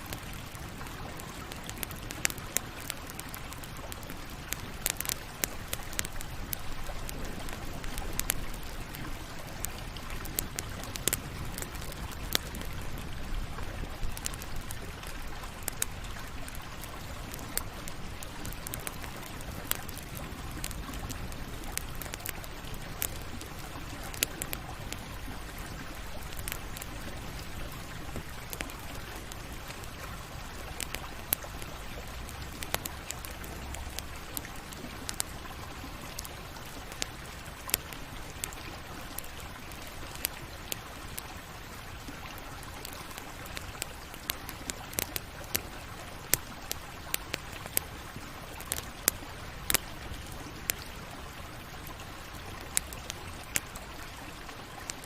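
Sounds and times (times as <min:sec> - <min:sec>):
campfire hiss and rumble: 0:00.0 - 0:55.0
wood crackling and popping: 0:00.0 - 0:55.0.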